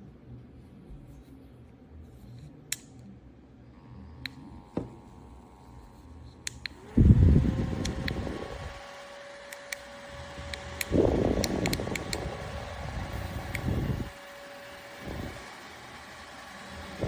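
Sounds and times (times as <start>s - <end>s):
fan whining: 3.8s - 17.0s
sharp plastic clicks: 10.5s - 12.3s.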